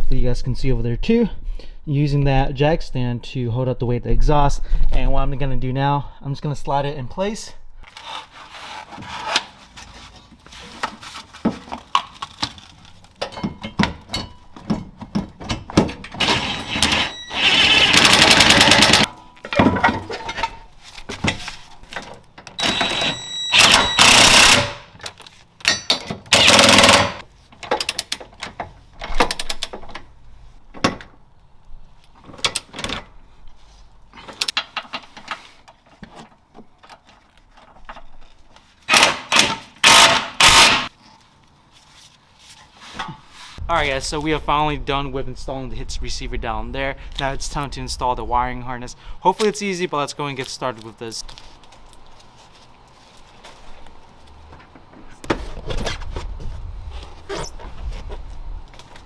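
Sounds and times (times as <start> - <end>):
metal clanks and knocks: 10.7 - 30.1
impact wrench bursts: 16.2 - 19.1, 22.6 - 25.0, 26.3 - 27.2, 38.9 - 40.9.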